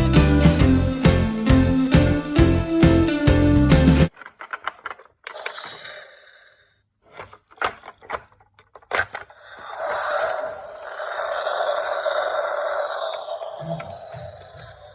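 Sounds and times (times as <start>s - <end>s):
plastic toy clicks and knocks: 4.1s - 5.9s, 7.1s - 9.6s.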